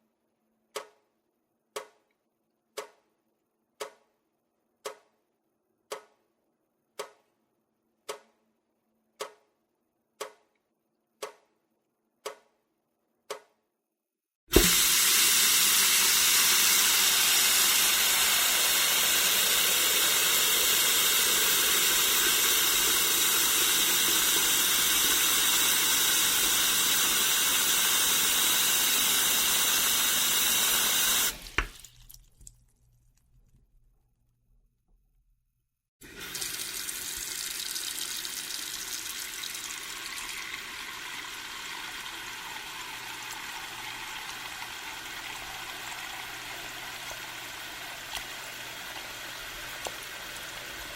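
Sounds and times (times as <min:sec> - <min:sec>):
clock ticking: 0:03.8 - 0:04.1, 0:04.8 - 0:05.2, 0:05.9 - 0:06.2, 0:07.0 - 0:07.3, 0:09.2 - 0:09.5, 0:10.2 - 0:10.6, 0:11.2 - 0:11.5.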